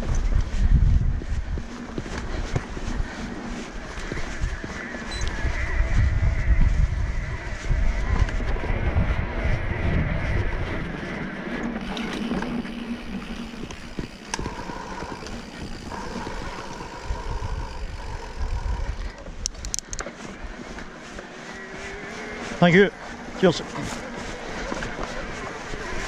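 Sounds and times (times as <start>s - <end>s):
wind and tyre noise: 0.0s - 26.0s
faint motor whine: 8.2s - 19.4s
sharp clicks: 19.0s - 20.1s.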